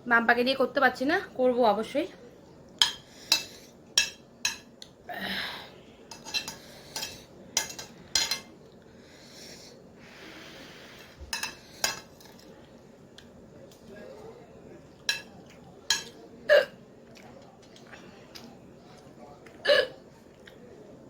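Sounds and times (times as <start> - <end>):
cutlery clinking on plate: 2.8 - 4.7, 6.1 - 8.6, 11.3 - 12.5, 15.1 - 16.2.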